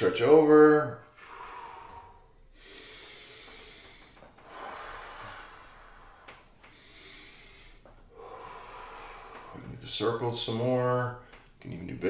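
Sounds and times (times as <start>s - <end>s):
person breathing deeply: 1.0s - 9.8s.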